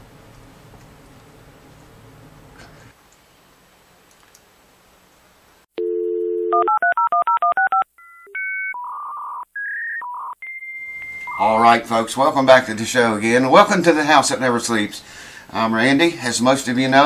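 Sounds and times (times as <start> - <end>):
telephone dial tone: 5.8 - 9.4
touch-tone dialing: 5.8 - 11.5
held phone-line tones: 5.8 - 11.7.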